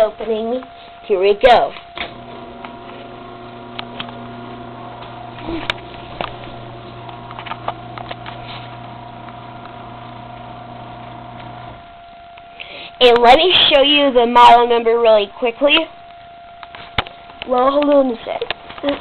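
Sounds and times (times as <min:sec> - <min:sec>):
garage door opener motor hum: 0:01.9 - 0:12.0.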